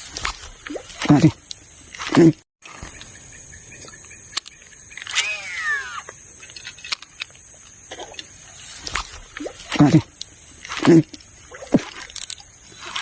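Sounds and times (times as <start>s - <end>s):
steady high-pitched hiss: 2.8s - 13.0s
animal call falling in pitch: 5.1s - 6.2s.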